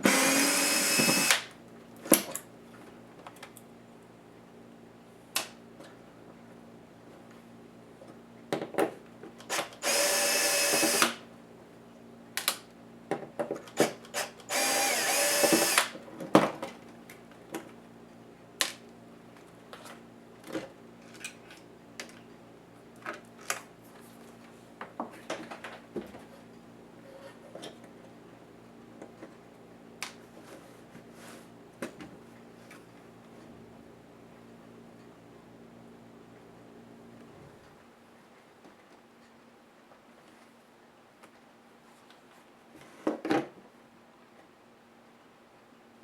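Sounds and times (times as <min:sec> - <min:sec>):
electric screwdriver whirring: 0:00.0 - 0:01.5, 0:09.5 - 0:11.2, 0:13.8 - 0:15.9.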